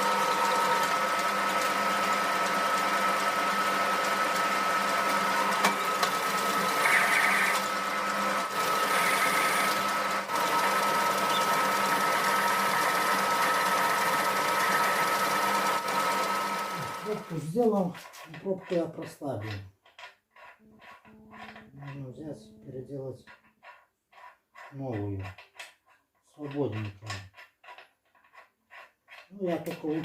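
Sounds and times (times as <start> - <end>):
lathe whining: 0.0 - 22.2
scraping cuts: 0.0 - 30.0.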